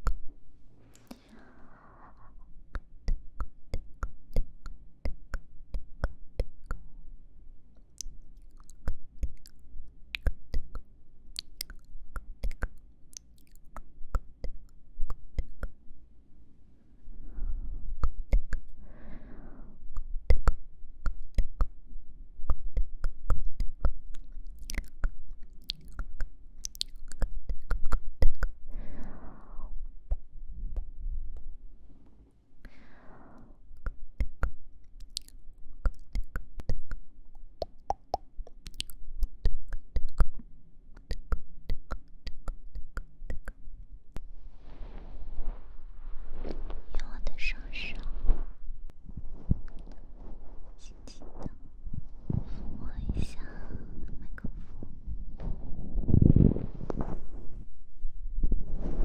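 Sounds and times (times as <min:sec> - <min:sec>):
wet tongue and lip clicks: 0:00.0 - 0:00.3, 0:02.6 - 0:06.9, 0:07.7 - 0:15.8, 0:17.9 - 0:18.8, 0:19.8 - 0:21.8, 0:22.4 - 0:28.6, 0:33.7 - 0:43.6
slow breaths into microphone: 0:44.2 - 0:59.0.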